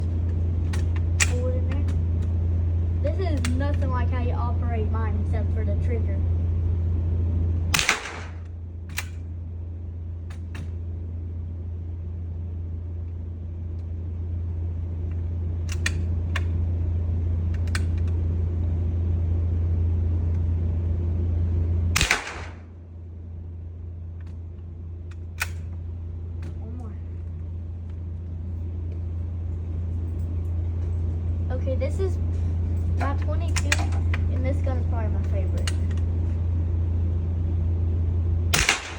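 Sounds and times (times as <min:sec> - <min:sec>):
steady low hum: 0:00.0 - 0:38.9
rifle shot: 0:07.7 - 0:09.2, 0:22.0 - 0:22.7, 0:38.5 - 0:38.9.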